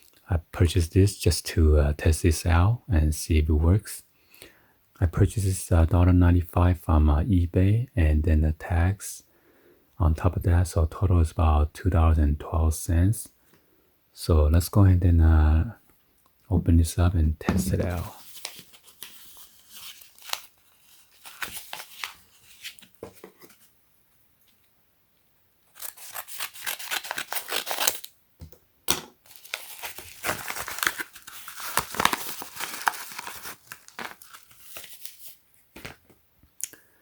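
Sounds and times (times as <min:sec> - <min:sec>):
plastic packaging crinkling: 0:17.6 - 0:23.0, 0:25.7 - 0:28.1, 0:29.2 - 0:36.1.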